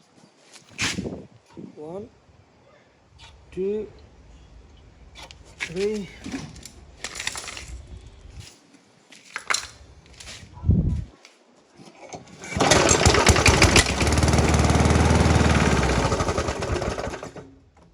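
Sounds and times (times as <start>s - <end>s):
lawn mower engine running: 12.4s - 17.6s.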